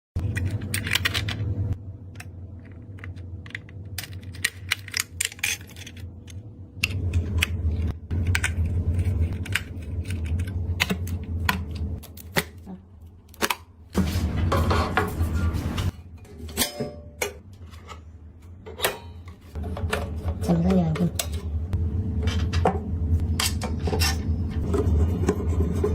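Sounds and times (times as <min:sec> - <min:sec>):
computer parts clicking and snapping: 0:00.2 - 0:01.5
steady low hum: 0:00.2 - 0:25.9.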